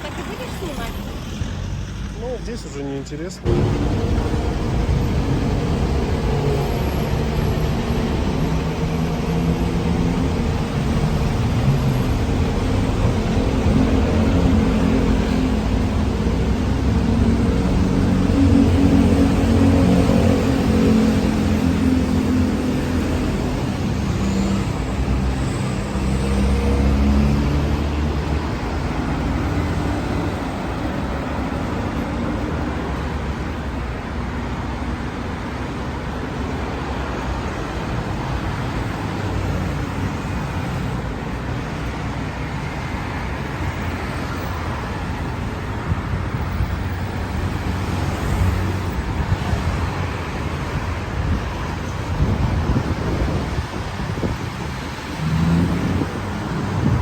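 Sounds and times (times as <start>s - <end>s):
traffic road noise: 0.0s - 57.0s
low engine hum: 3.4s - 33.9s.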